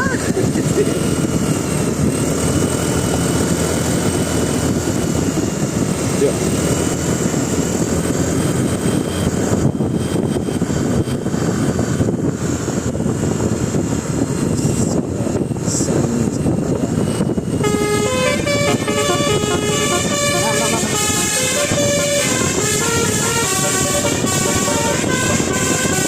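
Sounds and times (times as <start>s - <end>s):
bus engine rumble: 0.0s - 26.0s
road noise: 0.0s - 26.0s
bus horn playing a tune: 17.6s - 26.0s.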